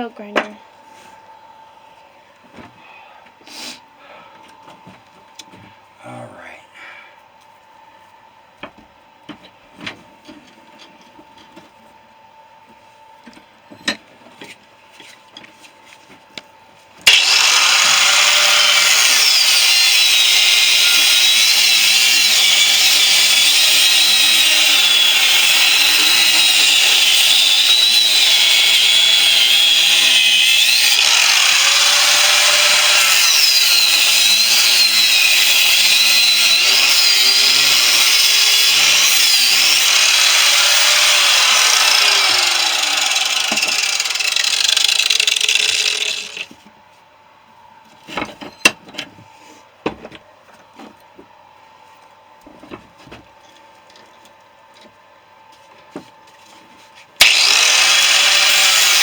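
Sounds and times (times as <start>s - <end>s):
angle grinder cutting metal: 17.1s - 46.5s, 57.2s - 59.0s.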